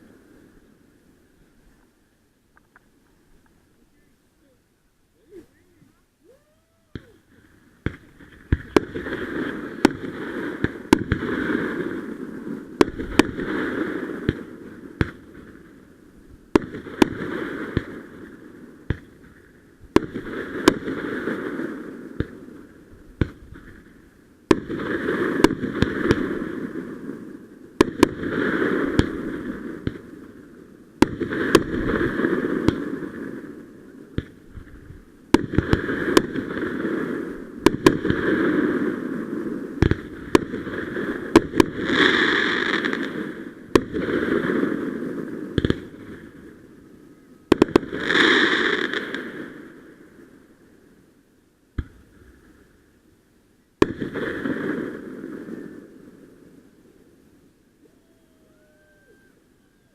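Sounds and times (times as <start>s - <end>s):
rushing crackling fireworks: 5.2s - 53.0s, 53.8s - 59.9s
fireworks bangs and pops: 6.9s - 15.8s, 16.5s - 30.4s, 31.0s - 46.6s, 47.5s - 49.6s, 51.8s - 52.6s, 53.8s - 55.9s.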